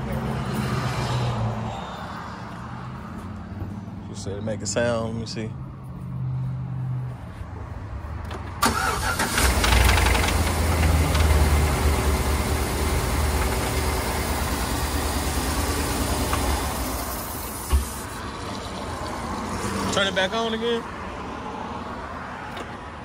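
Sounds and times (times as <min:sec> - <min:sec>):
engine cranking and idling: 0:08.2 - 0:19.3.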